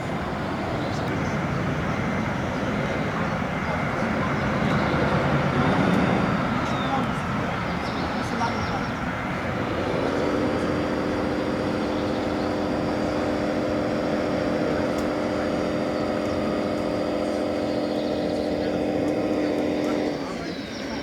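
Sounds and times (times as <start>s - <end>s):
model machine motor whining: 9.3s - 21.0s.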